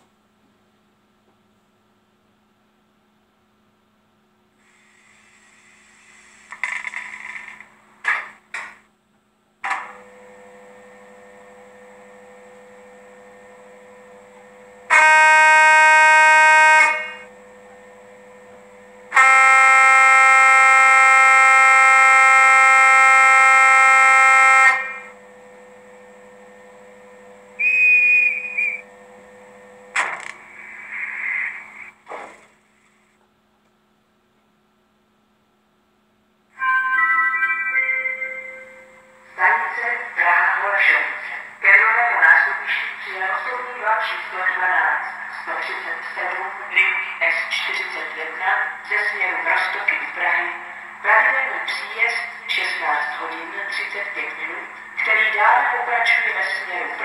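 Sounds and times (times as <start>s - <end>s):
faint steady hum: 0.0s - 57.0s
horn blasts: 14.9s - 17.3s, 19.1s - 25.2s.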